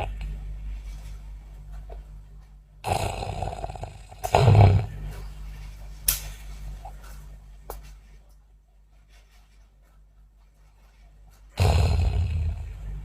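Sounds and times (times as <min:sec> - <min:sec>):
person snoring: 0:02.8 - 0:05.0, 0:11.6 - 0:12.8.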